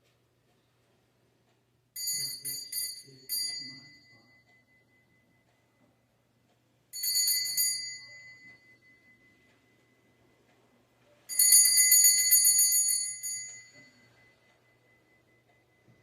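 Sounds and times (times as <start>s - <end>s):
small altar bells ringing: 2.0s - 5.5s, 6.9s - 10.1s, 11.3s - 16.0s.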